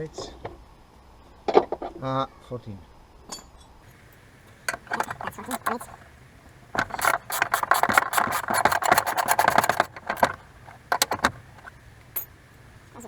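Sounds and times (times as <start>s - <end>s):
metal clicks: 3.9s - 13.0s
ratchet wrench clicking: 3.9s - 13.0s.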